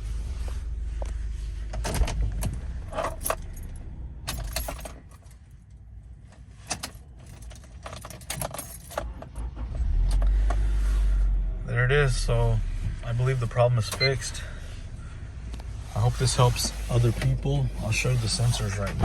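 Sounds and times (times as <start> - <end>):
car engine idling: 0.0 - 5.9, 9.0 - 19.0
keys jingling: 2.9 - 5.4, 6.7 - 9.2.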